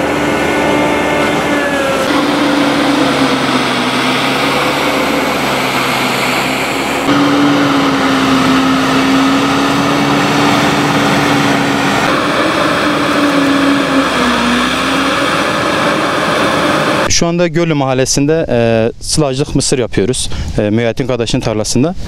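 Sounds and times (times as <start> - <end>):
tractor engine running: 0.0 - 17.1.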